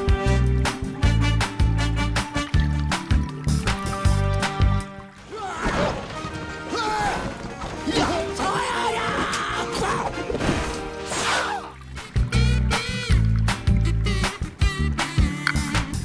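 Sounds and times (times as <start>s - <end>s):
music with heavy beat: 0.0s - 4.8s, 12.2s - 16.0s
crashing and smashing effects: 5.2s - 11.6s.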